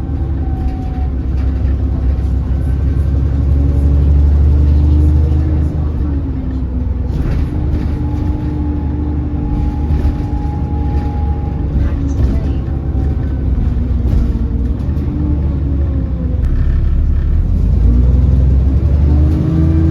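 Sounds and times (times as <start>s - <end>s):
bus engine drone: 0.0s - 19.9s
high whine: 16.4s - 18.6s.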